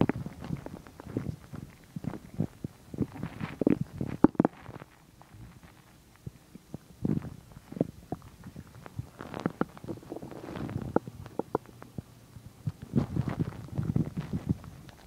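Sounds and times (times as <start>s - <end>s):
stomach growling and gurgling: 0.0s - 15.0s.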